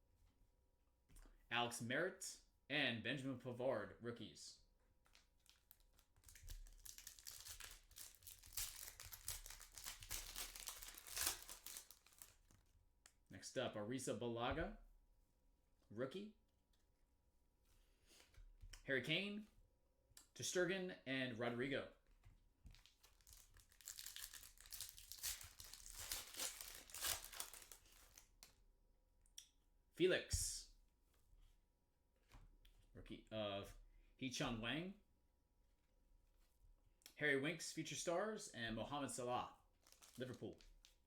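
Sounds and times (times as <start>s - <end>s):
foil wrapper crinkling and tearing: 5.1s - 12.6s, 22.7s - 28.5s, 39.8s - 41.0s.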